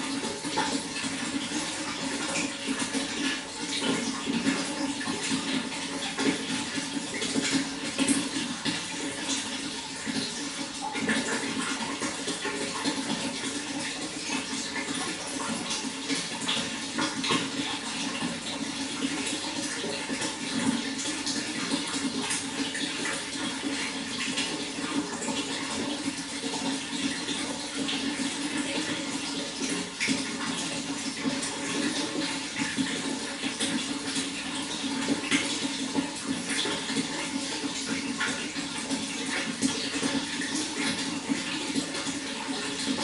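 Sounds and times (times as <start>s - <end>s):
running water splashing: 0.0s - 43.0s.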